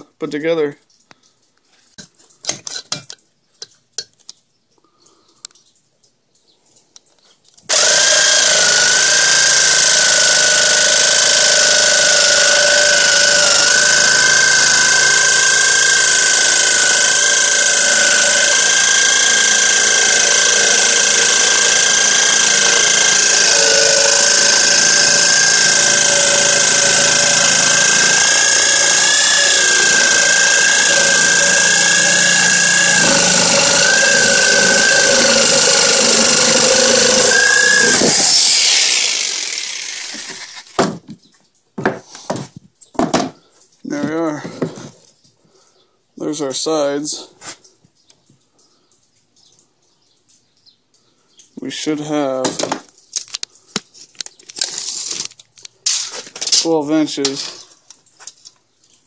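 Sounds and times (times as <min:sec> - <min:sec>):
power saw whining: 0:07.7 - 0:41.0.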